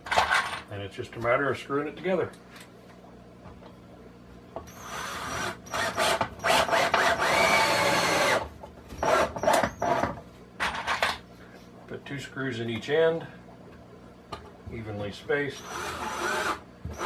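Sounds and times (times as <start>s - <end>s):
screws driven into wood: 4.7s - 8.4s.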